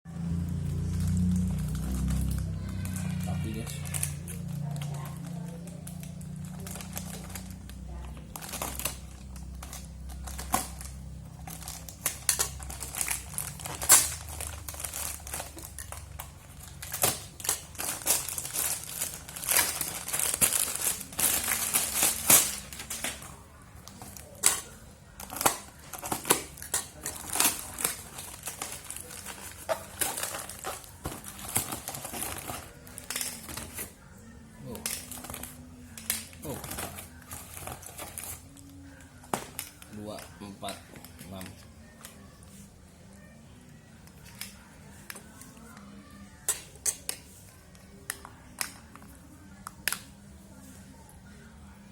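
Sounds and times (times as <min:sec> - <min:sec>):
packaging crinkling and rustling: 0:00.8 - 0:34.0, 0:34.6 - 0:42.4.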